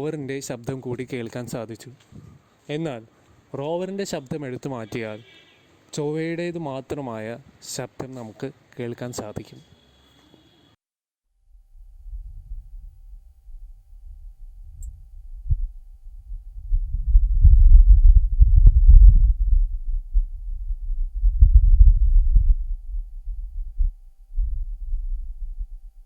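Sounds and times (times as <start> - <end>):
wind gusting low rumble: 11.5 - 26.0.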